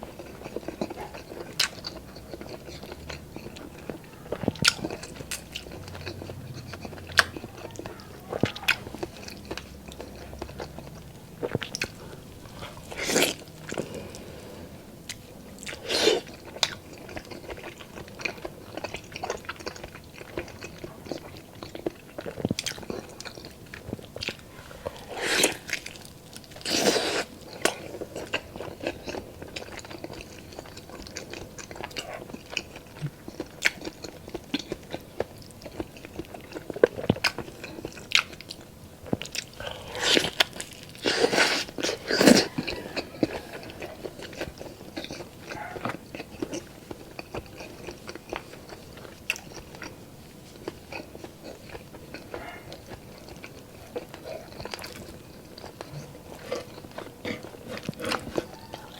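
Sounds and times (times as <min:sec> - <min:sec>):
person chewing and biting: 0:00.0 - 0:14.4, 0:15.1 - 0:58.9
slurps: 0:24.2 - 0:27.4, 0:39.6 - 0:44.8.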